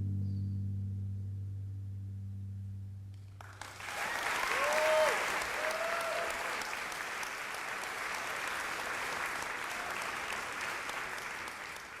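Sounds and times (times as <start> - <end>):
audience applauding: 3.4 - 12.0.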